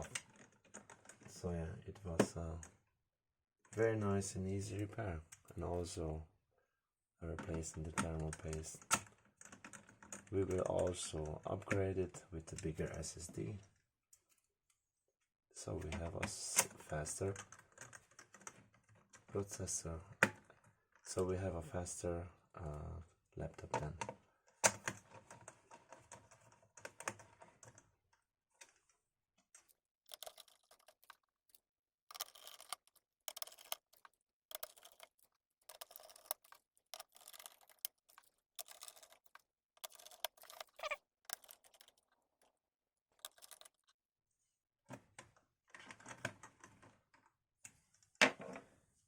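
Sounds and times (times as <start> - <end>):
screwdriver clicks and scrapes: 29.6 - 42.1, 43.2 - 43.9.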